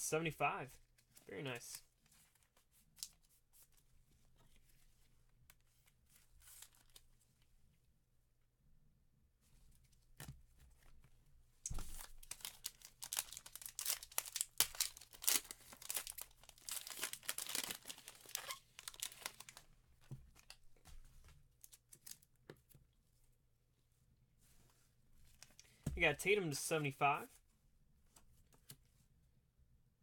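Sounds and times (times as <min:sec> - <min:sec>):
plastic wrapping crinkling: 0:11.8 - 0:19.7.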